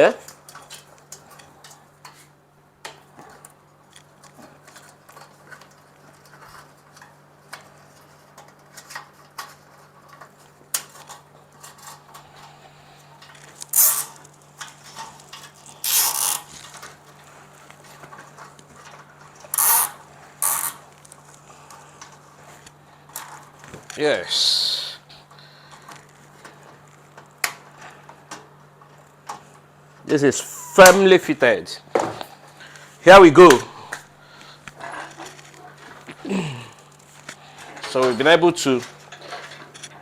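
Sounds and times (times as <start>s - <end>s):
cable ties ratcheting zip: 13.6s - 14.3s, 15.4s - 16.8s, 19.5s - 20.9s.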